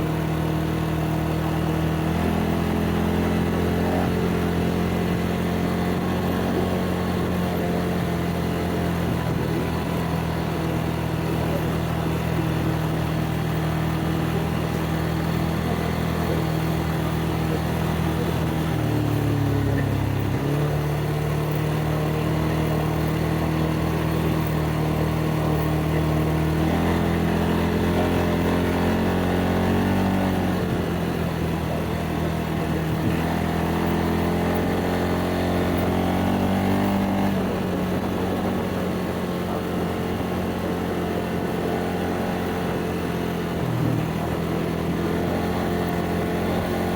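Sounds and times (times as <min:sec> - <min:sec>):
atv engine running: 0:00.0 - 0:46.9.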